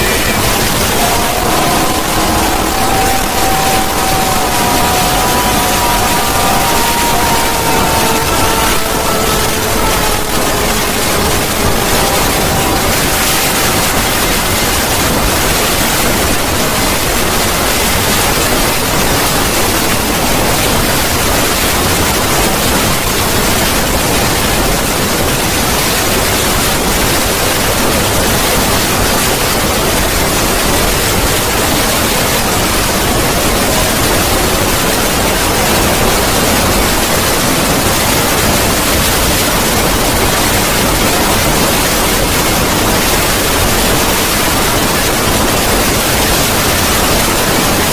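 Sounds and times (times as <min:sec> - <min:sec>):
faint tones: 0:00.0 - 0:15.5
harsh distorted static noise: 0:00.0 - 0:47.9.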